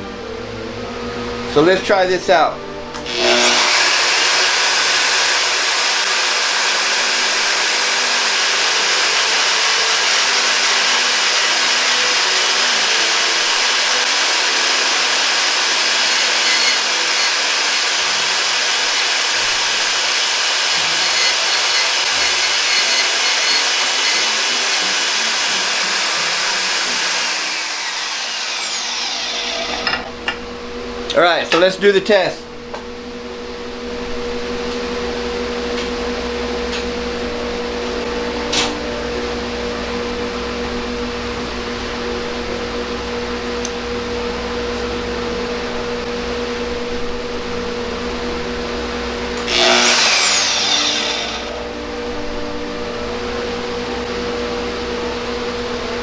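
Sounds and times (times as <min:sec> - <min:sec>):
band saw whirring: 0:03.0 - 0:30.3, 0:49.2 - 0:52.2.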